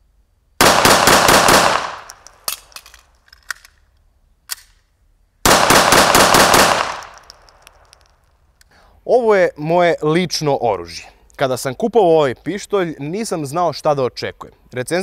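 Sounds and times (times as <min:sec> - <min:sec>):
pistol shots: 0:00.6 - 0:02.7, 0:05.4 - 0:07.9.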